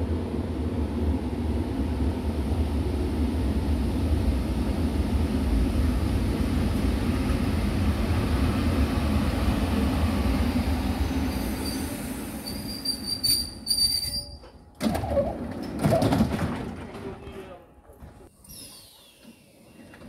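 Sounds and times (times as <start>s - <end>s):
passenger train rumbling past: 0.0s - 14.8s
high wheel squeal: 11.4s - 14.6s.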